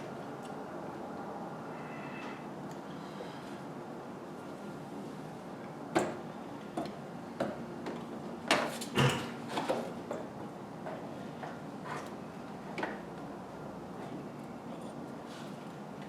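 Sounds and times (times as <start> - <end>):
steady background hum: 0.0 - 16.0.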